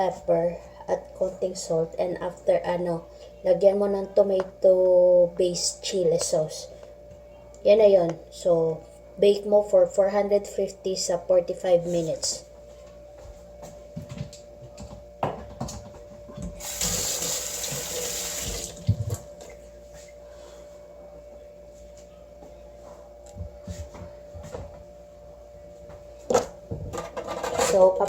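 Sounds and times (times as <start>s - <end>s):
kitchen tap running: 16.6s - 19.2s.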